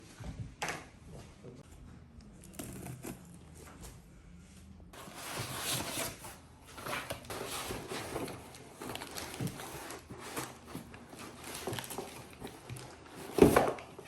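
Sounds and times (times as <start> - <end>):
rustling: 5.0 - 14.0.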